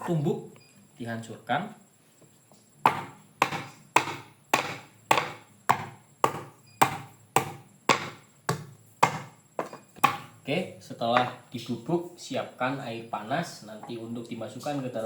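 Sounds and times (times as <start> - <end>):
ginger being pounded: 2.8 - 10.4.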